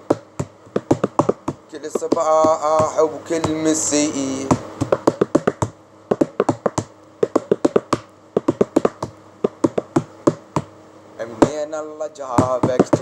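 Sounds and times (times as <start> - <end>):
hand percussion taps: 0.0 - 3.6, 4.5 - 10.7, 12.4 - 13.0
person singing: 11.2 - 13.0.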